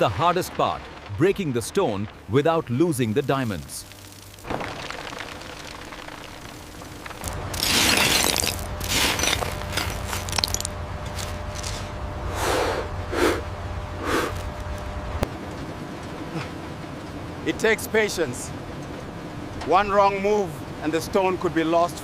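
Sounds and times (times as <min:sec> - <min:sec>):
low steady hum: 0:00.0 - 0:22.0
stone cracking and crumbling: 0:03.5 - 0:11.7
stone crunching crash: 0:04.4 - 0:11.7.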